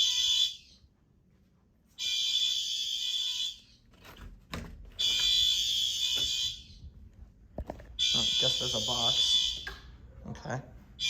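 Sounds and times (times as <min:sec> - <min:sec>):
fire alarm horns buzzing: 0:00.0 - 0:00.9, 0:02.0 - 0:03.8, 0:05.0 - 0:06.9, 0:08.0 - 0:09.9.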